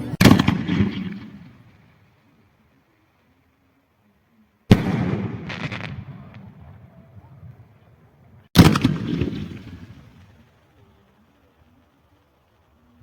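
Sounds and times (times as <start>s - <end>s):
fireworks crackle: 0.0s - 13.0s
fireworks bangs with rumbling echo: 0.2s - 1.9s, 4.7s - 10.8s.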